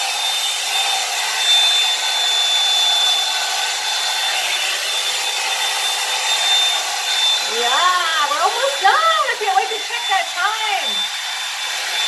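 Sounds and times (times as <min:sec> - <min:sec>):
hair dryer brush whining: 0:00.0 - 0:12.0.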